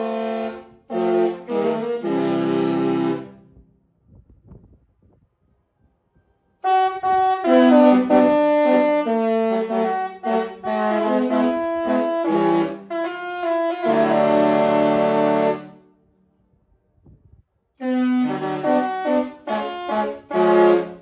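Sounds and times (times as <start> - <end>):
ship horn playing a tune: 0.0 - 3.6, 6.6 - 15.9, 17.8 - 21.0.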